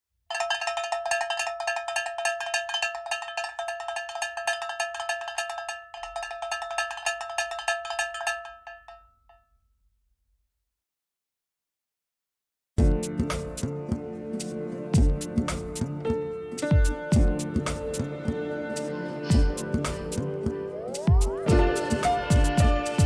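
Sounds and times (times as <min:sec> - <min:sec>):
small metal bell struck rapidly: 0:00.3 - 0:09.0.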